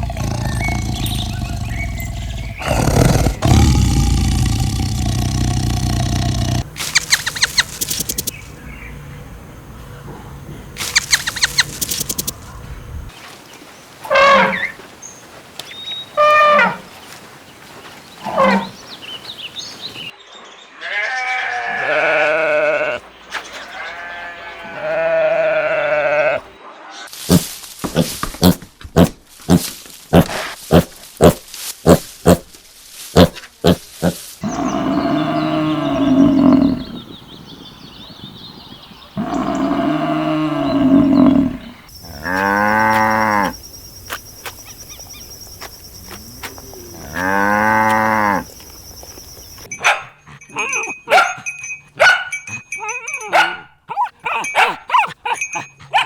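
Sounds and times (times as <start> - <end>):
long loud animal calls: 0.0 - 6.6
sharp clicks or snorts: 0.0 - 8.4, 10.8 - 12.4, 27.3 - 32.5
farm animal bleating: 20.7 - 23.0, 23.7 - 26.5.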